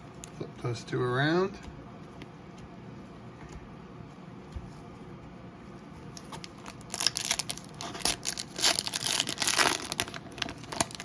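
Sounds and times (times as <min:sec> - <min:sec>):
foil wrapper crinkling and tearing: 0:06.2 - 0:11.0.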